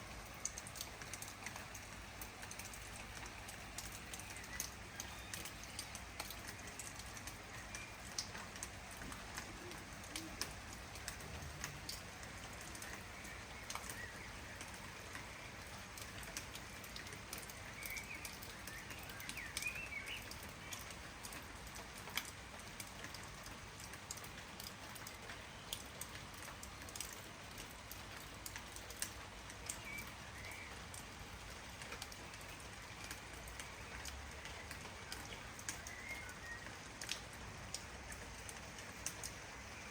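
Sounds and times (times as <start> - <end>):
light rain: 0.0 - 39.9
raindrops ticking: 0.0 - 39.9
bird chirps: 4.1 - 6.0.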